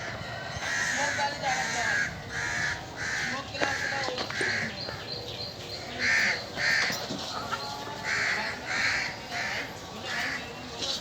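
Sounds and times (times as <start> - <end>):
crows cawing: 0.0 - 5.0, 5.9 - 7.2, 8.0 - 10.5.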